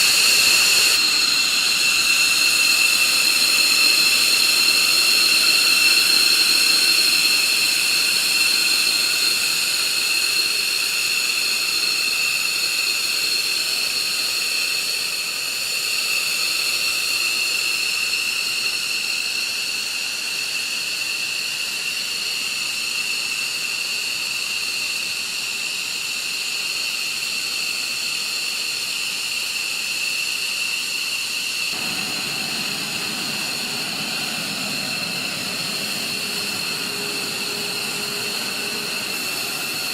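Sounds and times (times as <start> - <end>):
jet engines whining: 0.0 - 15.9, 31.7 - 39.9.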